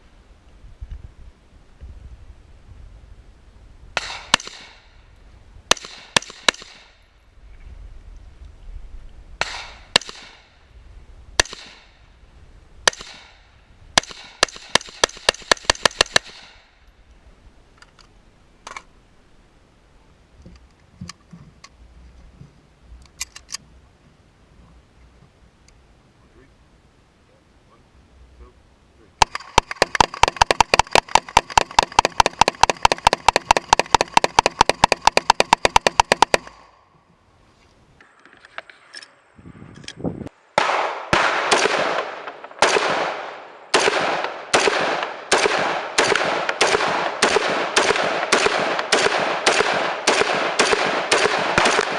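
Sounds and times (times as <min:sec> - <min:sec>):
gunshots: 0:04.0 - 0:04.9, 0:05.7 - 0:07.0, 0:09.4 - 0:10.6, 0:11.4 - 0:12.0, 0:12.8 - 0:16.8, 0:29.2 - 0:36.8, 0:40.6 - 0:51.9
rapid gunfire: 0:14.0 - 0:16.6, 0:29.2 - 0:36.6, 0:40.6 - 0:51.9.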